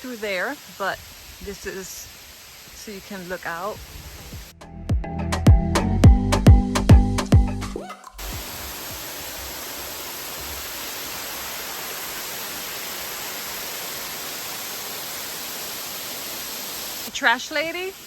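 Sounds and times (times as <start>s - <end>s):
music with heavy beat: 4.6s - 8.4s
waterfall rushing: 8.2s - 18.0s.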